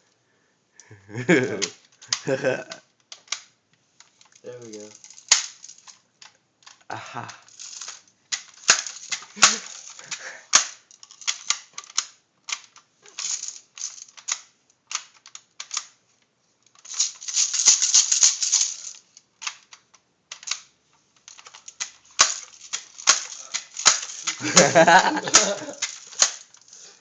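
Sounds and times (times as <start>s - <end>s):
bb gun firing clicks and snaps: 1.6s - 3.5s, 5.2s - 6.8s, 8.3s - 16.0s, 19.4s - 20.7s, 21.3s - 26.5s.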